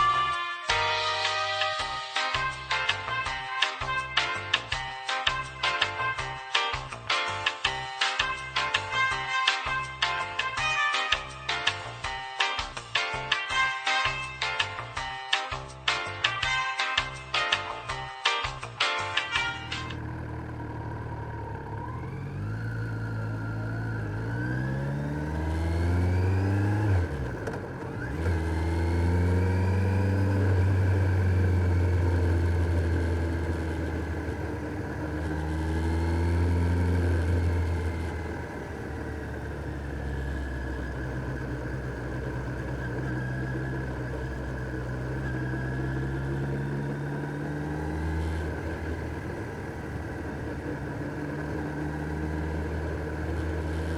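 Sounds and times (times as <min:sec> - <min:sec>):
motorcycle engine revving: 0:19.4 - 0:53.9.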